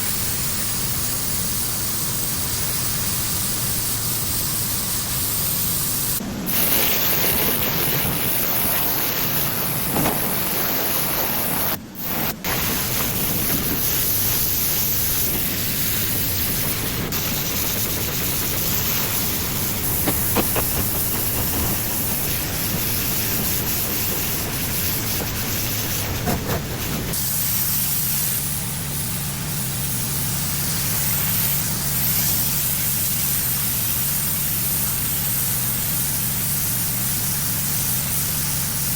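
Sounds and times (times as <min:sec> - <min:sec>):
pressure washer spraying concrete: 0:00.0 - 0:38.9
engine humming: 0:12.5 - 0:27.2.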